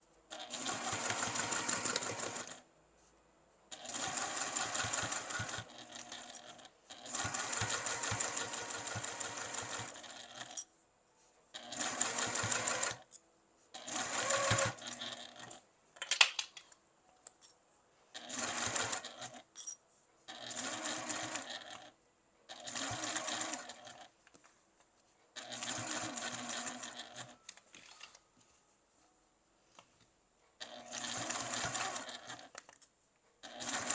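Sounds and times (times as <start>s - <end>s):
sewing machine stitching: 0.3s - 2.6s, 3.7s - 10.6s, 11.6s - 13.1s, 13.8s - 15.6s, 18.2s - 19.5s, 20.3s - 24.1s, 25.4s - 27.4s, 30.6s - 32.6s, 33.4s - 33.9s.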